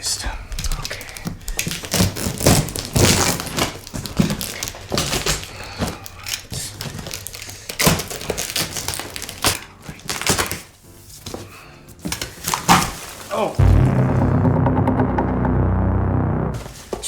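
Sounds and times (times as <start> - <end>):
packaging crinkling and tearing: 0.6 - 10.7.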